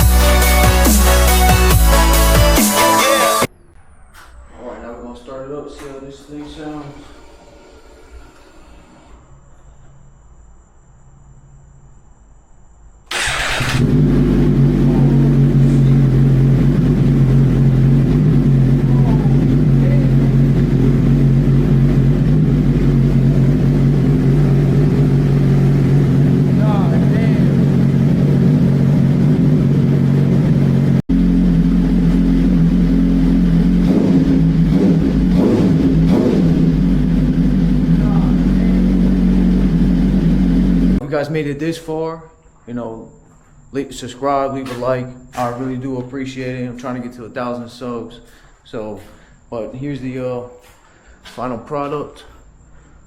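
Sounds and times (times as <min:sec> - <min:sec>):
motorcycle engine cranking: 0:13.1 - 0:14.8
motorcycle engine idling loudly: 0:13.1 - 0:41.0.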